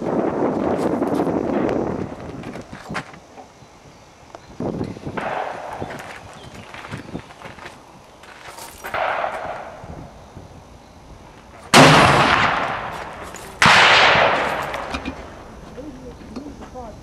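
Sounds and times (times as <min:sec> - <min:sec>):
gunshots with echo: 0:05.2 - 0:05.8, 0:08.9 - 0:09.8, 0:11.7 - 0:15.1.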